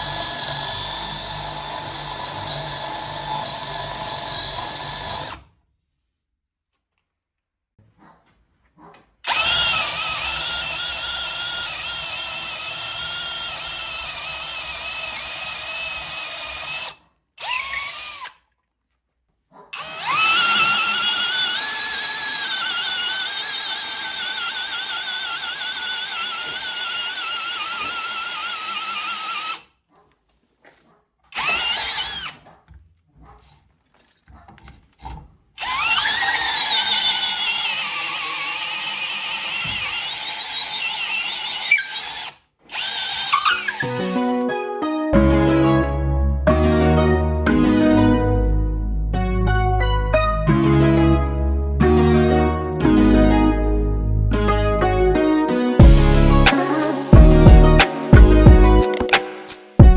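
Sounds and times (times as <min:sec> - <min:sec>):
cordless drill whining: 0:00.0 - 0:05.5, 0:09.2 - 0:18.5, 0:19.8 - 0:29.7, 0:31.3 - 0:32.4, 0:35.0 - 0:44.4.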